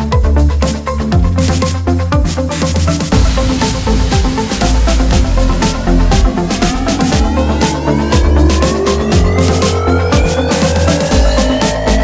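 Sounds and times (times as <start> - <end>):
electronic dance music: 2.8 - 12.0.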